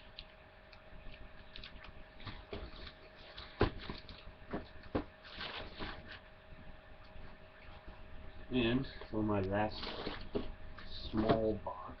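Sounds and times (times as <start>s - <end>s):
packages knocking and tapping: 2.2s - 6.2s
packaging rustle: 2.3s - 6.2s, 9.6s - 10.5s.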